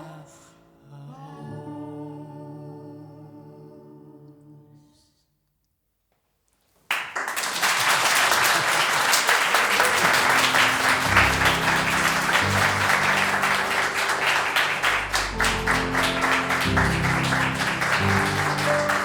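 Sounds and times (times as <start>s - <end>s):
audience applause: 6.9s - 19.0s
low sustained musical notes: 10.0s - 19.0s.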